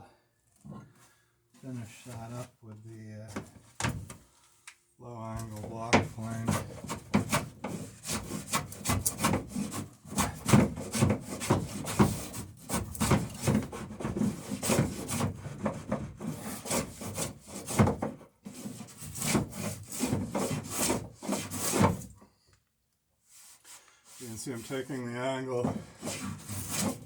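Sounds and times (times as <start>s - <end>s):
block plane strokes on wood: 5.6s - 22.2s, 23.4s - 27.0s.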